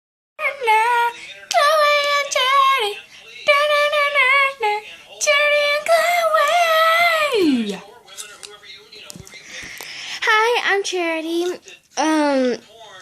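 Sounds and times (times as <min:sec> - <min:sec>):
girl singing unaccompanied: 0:00.4 - 0:07.8.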